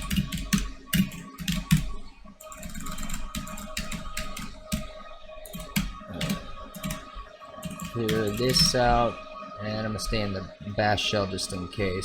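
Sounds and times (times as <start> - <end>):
computer keyboard typing: 0.0 - 4.9, 5.5 - 7.0, 7.6 - 8.8.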